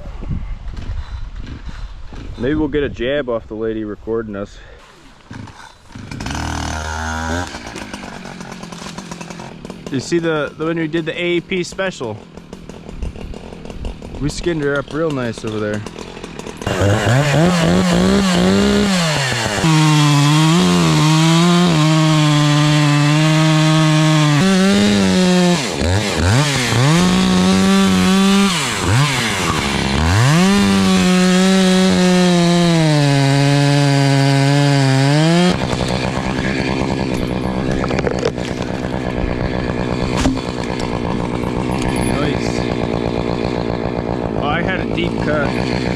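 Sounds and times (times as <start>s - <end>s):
chainsaw cutting wood: 4.8s - 45.9s
steady rough noise: 35.1s - 45.9s.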